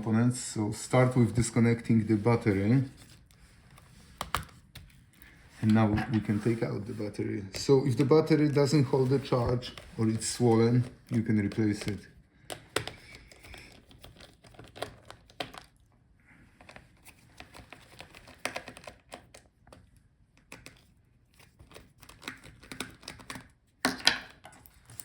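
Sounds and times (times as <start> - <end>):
plastic laptop parts clicking: 4.2 - 5.0, 10.8 - 15.9, 16.6 - 25.0.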